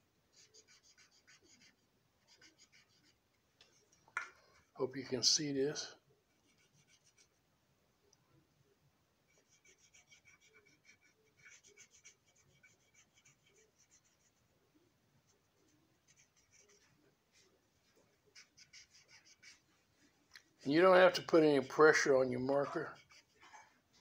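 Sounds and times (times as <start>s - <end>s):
marker scratching on plastic: 0.3s - 3.9s, 6.3s - 7.4s, 9.3s - 14.4s, 15.3s - 19.8s, 20.7s - 23.6s.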